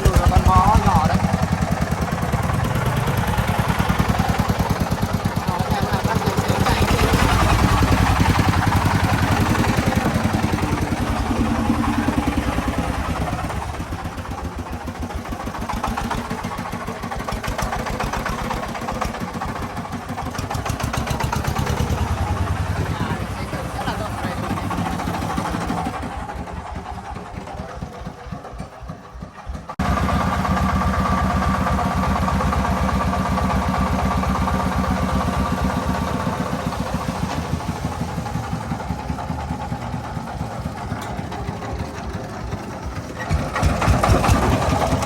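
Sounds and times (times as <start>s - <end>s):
diesel engine chugging: 0.0s - 45.0s.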